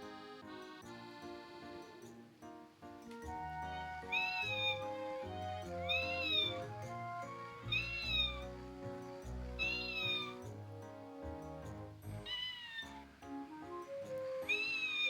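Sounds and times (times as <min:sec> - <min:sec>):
background music: 0:00.0 - 0:15.0
toy kitten meows: 0:04.1 - 0:04.9, 0:05.8 - 0:06.6, 0:07.7 - 0:08.4, 0:09.6 - 0:10.3, 0:12.3 - 0:13.0, 0:14.4 - 0:15.0.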